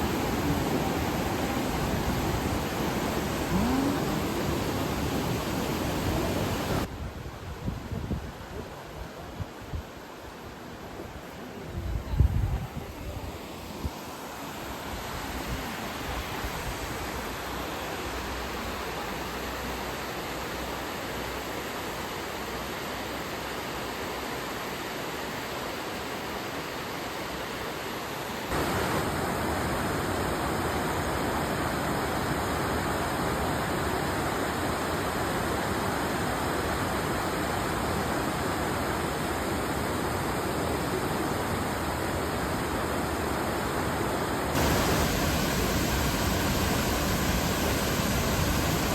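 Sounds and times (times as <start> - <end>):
waterfall rushing: 0.0 - 6.9, 28.5 - 31.5, 33.9 - 48.9.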